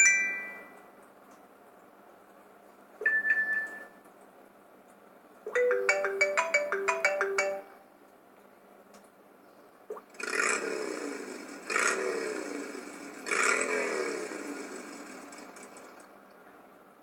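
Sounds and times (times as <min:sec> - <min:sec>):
quick chiming ringtone melody: 0:00.0 - 0:00.8, 0:03.0 - 0:04.0, 0:05.5 - 0:07.9.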